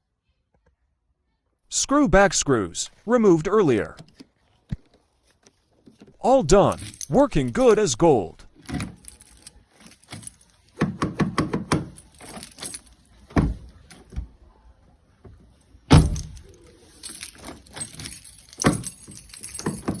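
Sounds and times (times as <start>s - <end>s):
keys jangling: 6.4s - 14.2s, 15.4s - 20.0s.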